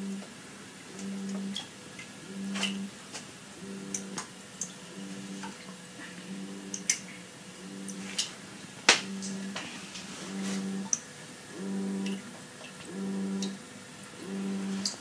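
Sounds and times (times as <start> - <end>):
aquarium pump humming in pulses: 0.0 - 15.0.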